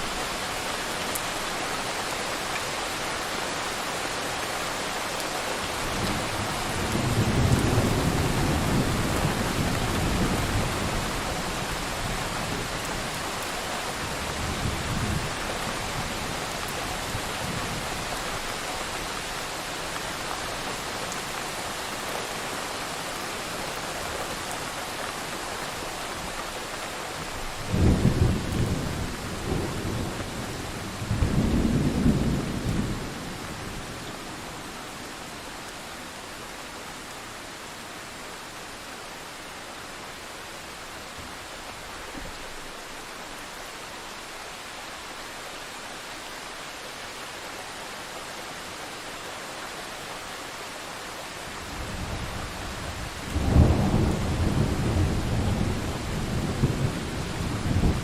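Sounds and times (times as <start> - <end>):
heavy rain: 0.0 - 58.0
rolling thunder: 27.7 - 33.4, 51.8 - 58.0
sharp thunderclap: 53.3 - 57.0.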